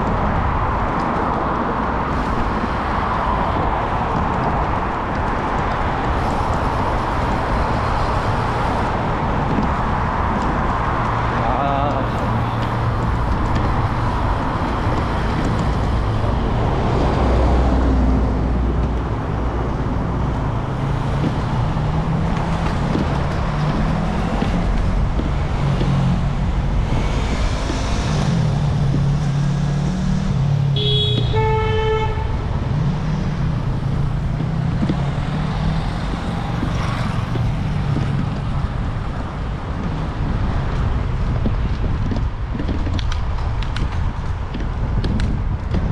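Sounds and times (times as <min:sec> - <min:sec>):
road traffic engine rumble: 0:00.0 - 0:45.9
car horn: 0:30.7 - 0:32.5.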